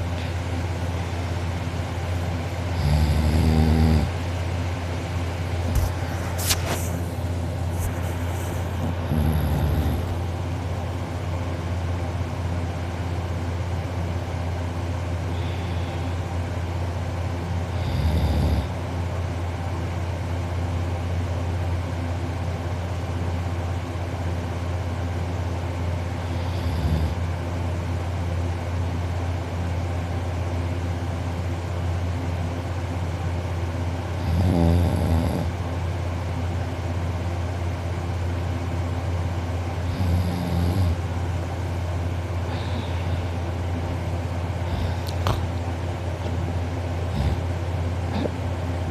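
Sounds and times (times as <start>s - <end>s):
steady low hum: 0.0s - 48.9s
man snoring: 2.7s - 4.2s, 8.4s - 10.3s, 17.7s - 18.8s, 26.2s - 27.3s, 34.2s - 35.6s, 39.8s - 41.1s, 44.6s - 45.4s, 47.1s - 48.4s.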